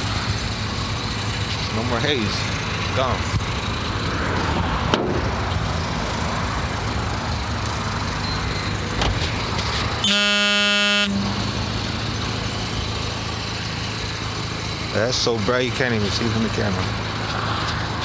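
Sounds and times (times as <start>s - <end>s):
low engine rumble: 0.0s - 18.0s
vehicle horn honking: 10.0s - 11.4s.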